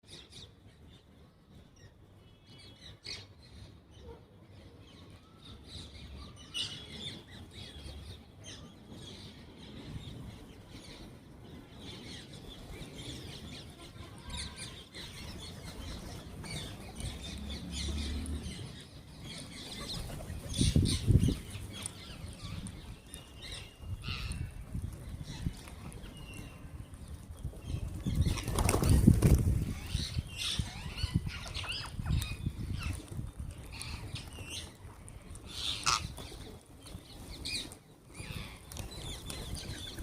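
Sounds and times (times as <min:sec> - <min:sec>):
parrots chirping and squawking: 0:35.5 - 0:36.3.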